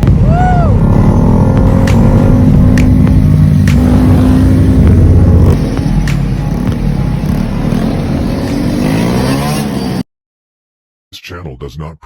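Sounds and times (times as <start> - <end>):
motorcycle engine revving: 0.0 - 10.0.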